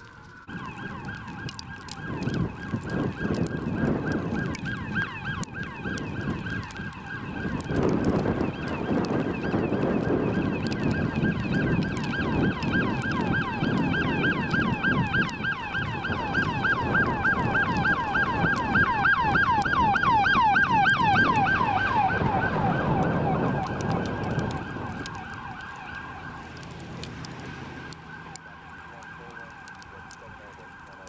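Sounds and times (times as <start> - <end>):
electronic siren yelping: 0.0 - 31.0
heavy vehicle rumble: 7.6 - 31.0.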